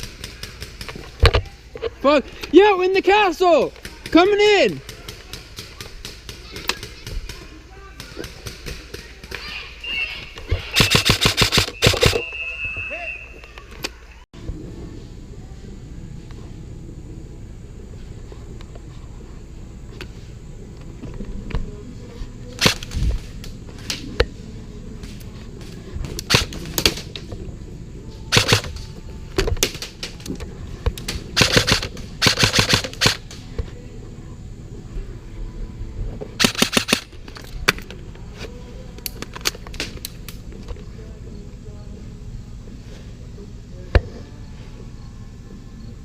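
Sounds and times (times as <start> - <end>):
airsoft guns firing: 0.0 - 1.3, 3.8 - 9.5, 10.7 - 12.3, 22.6 - 23.0, 26.2 - 27.2, 28.3 - 28.8, 31.0 - 33.4, 36.4 - 37.8.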